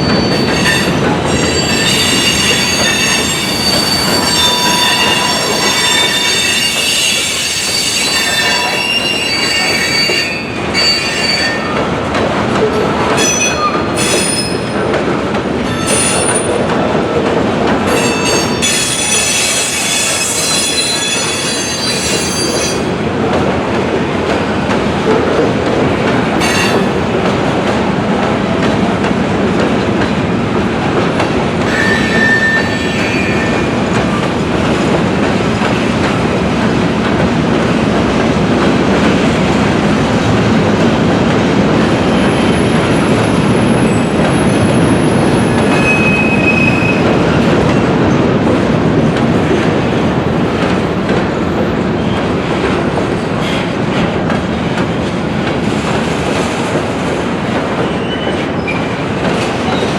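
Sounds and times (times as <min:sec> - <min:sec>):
wheel squeal: 0:00.0 - 0:11.8, 0:17.9 - 0:22.9, 0:31.7 - 0:33.7, 0:44.5 - 0:47.1
freight train wheels rumbling: 0:00.0 - 0:59.9.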